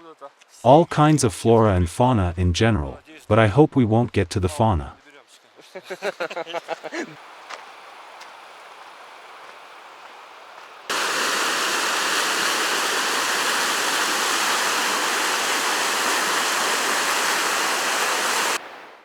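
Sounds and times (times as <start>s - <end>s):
outdoor hiss: 5.0s - 19.0s
waterfall rushing: 10.9s - 18.8s.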